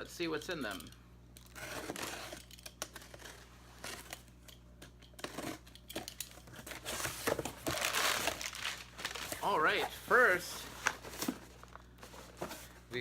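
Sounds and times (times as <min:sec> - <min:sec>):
packing crinkling and rustling: 0:06.4 - 0:12.8
packing tape being torn: 0:07.6 - 0:09.7.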